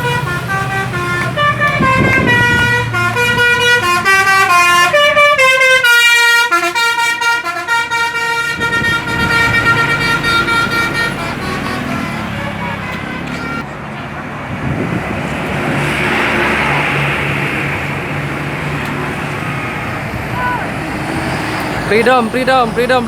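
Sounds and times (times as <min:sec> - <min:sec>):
musical air horn tune: 0:00.0 - 0:13.6
low engine rumble: 0:07.4 - 0:15.8, 0:16.5 - 0:23.0.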